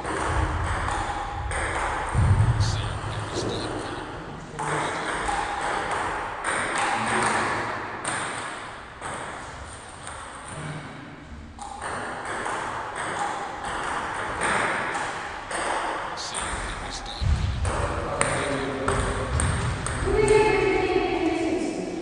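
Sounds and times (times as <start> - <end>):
hall noise: 2.5 - 4.4, 16.2 - 18.6.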